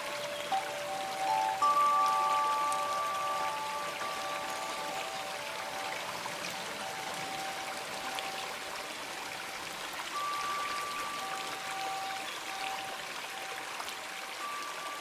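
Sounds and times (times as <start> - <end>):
stream water running: 0.0 - 15.0
held bell tones: 0.5 - 7.8, 10.2 - 12.9.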